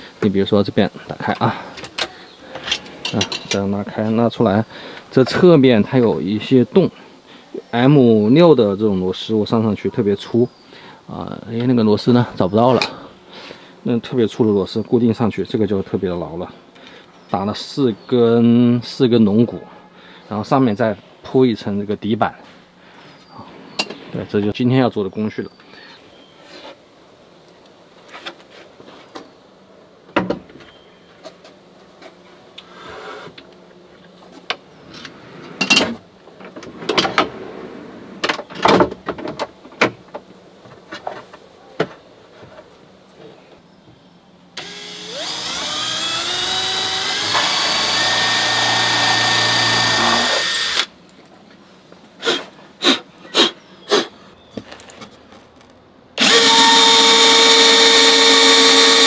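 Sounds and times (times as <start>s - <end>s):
workshop knocks and clatter: 30.1s - 30.7s, 38.2s - 42.7s
power tool motor spinning: 44.6s - 50.9s, 56.2s - 59.0s.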